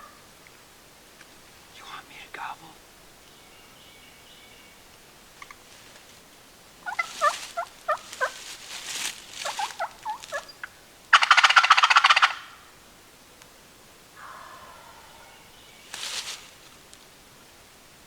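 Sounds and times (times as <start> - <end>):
turkey yelping: 6.8 - 8.5, 9.4 - 12.5, 14.2 - 15.4
turkey gobbling: 6.8 - 8.6, 9.3 - 12.6, 14.2 - 15.4.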